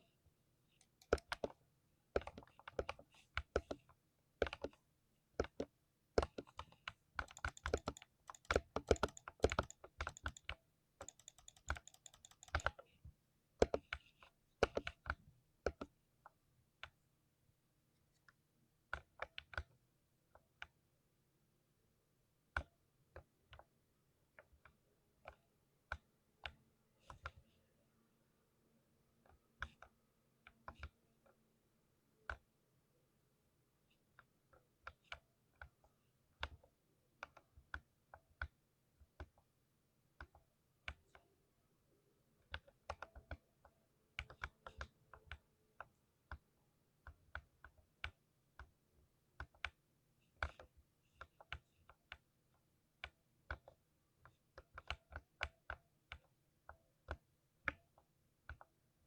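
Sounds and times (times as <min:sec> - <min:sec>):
mechanical keyboard typing: 0:00.8 - 0:01.6, 0:05.4 - 0:12.8.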